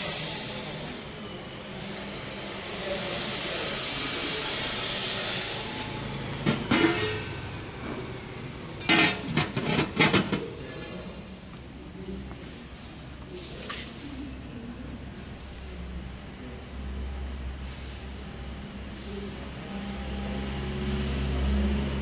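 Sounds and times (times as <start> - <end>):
ice cream machine hissing: 0.0 - 10.5.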